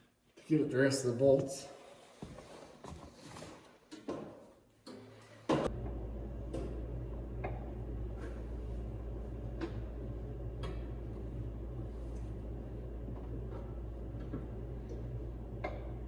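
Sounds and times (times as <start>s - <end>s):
steady low hum: 5.7s - 16.0s.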